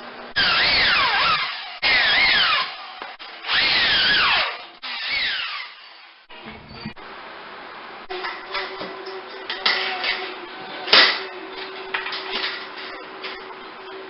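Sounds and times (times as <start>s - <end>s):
power drill driving screws: 0.4s - 2.8s, 3.4s - 6.1s.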